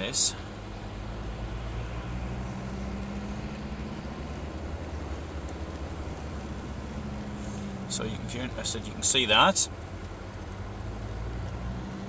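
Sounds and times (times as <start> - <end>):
engine hum inside car: 0.0 - 12.0.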